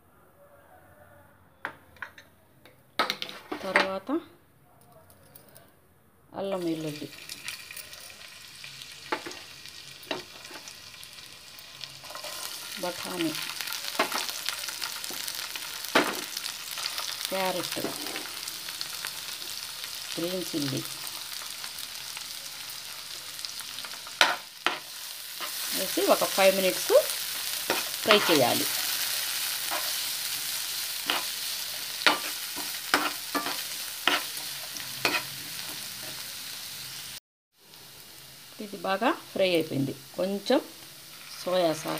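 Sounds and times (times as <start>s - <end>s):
ginger and garlic sizzling: 6.4s - 41.9s
spatula scraping a pan: 12.0s - 12.7s, 16.0s - 18.5s, 27.2s - 36.3s.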